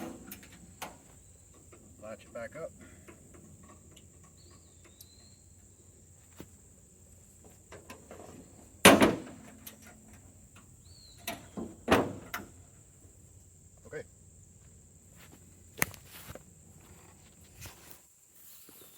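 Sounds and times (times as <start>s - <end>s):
metal latches clacking shut: 0.0s - 1.0s.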